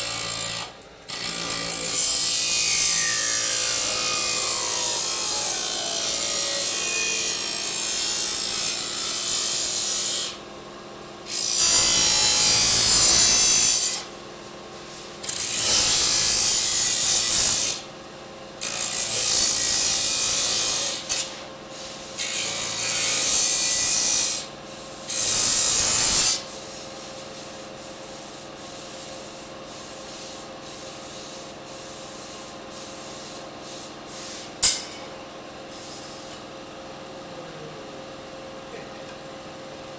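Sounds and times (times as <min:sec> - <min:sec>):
disc saw cutting metal: 0:00.0 - 0:10.4, 0:11.3 - 0:14.1, 0:15.2 - 0:17.9, 0:18.6 - 0:21.4, 0:22.2 - 0:26.5, 0:34.5 - 0:35.0
saw blade whining: 0:00.0 - 0:10.4, 0:11.3 - 0:14.1, 0:18.6 - 0:21.5, 0:34.4 - 0:35.1.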